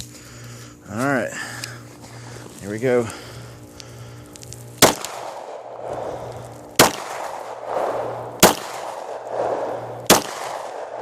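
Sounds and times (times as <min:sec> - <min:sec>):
pistol shots with echo: 0:04.8 - 0:05.9, 0:06.8 - 0:09.4, 0:10.1 - 0:11.0.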